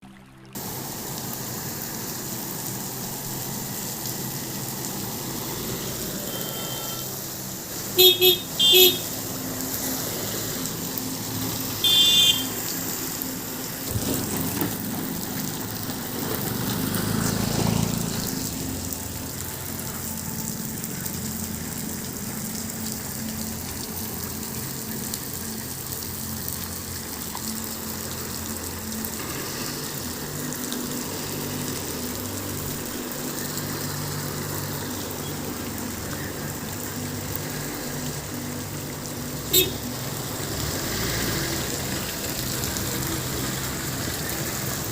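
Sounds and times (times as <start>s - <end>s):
waterfall rushing: 0.5s - 44.9s
car horn toot: 6.3s - 7.1s, 8.0s - 9.1s, 11.8s - 12.5s, 39.5s - 39.8s.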